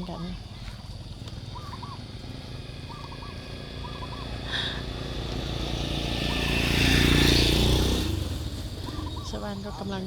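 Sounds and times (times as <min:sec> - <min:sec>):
faint bird chirps: 0:00.0 - 0:05.0, 0:08.6 - 0:10.0
vehicle engine approaching: 0:00.0 - 0:10.0.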